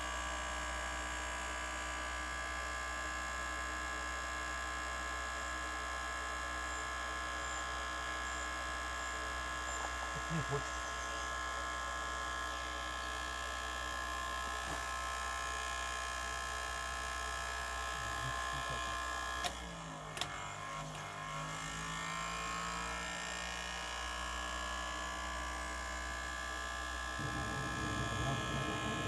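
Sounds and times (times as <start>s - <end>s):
electric motor buzzing hum: 0.0s - 29.0s.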